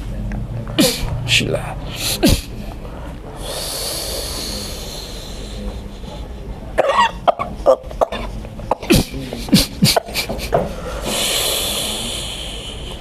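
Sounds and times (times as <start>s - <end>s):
person coughing and gagging: 0.8s - 1.1s, 2.0s - 2.6s, 6.8s - 10.6s
breathy hiss of air: 3.3s - 5.9s, 10.7s - 13.0s.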